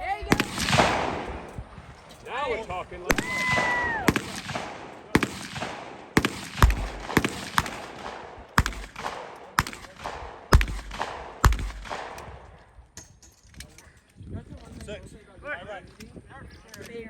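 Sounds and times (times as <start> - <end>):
gunshots: 0.2 - 12.6.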